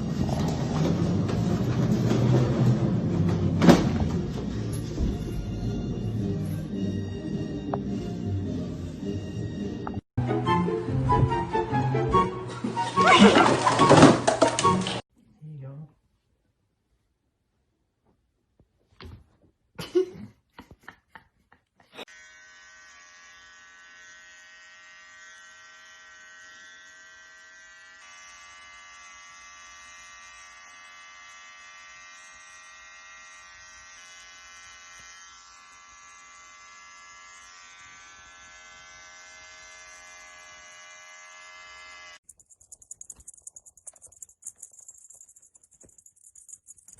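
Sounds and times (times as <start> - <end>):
high electric buzz: 22.1 - 42.2.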